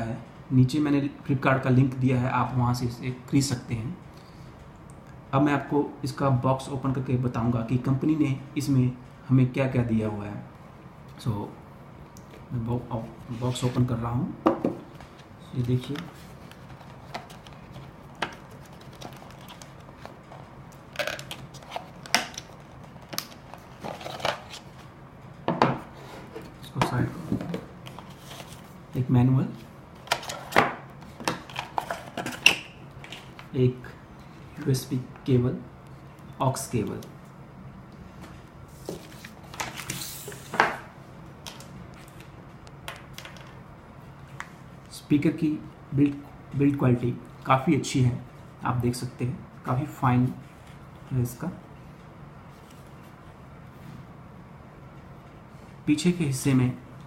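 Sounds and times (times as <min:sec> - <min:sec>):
packaging rustling and crinkling: 0:16.1 - 0:20.4, 0:21.0 - 0:24.8.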